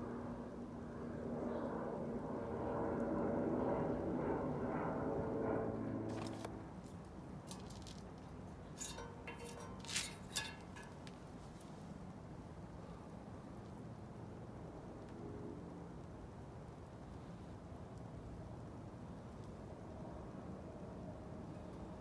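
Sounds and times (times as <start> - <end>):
kindling clicking and crackling: 8.8 - 11.2.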